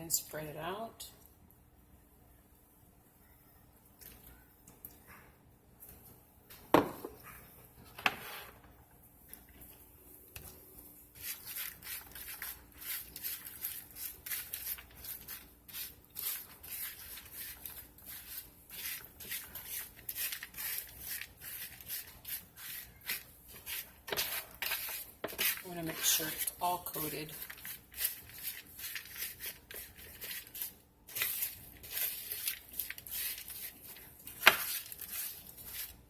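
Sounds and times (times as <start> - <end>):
spoon stirring oats in a bowl: 11.2 - 36.0.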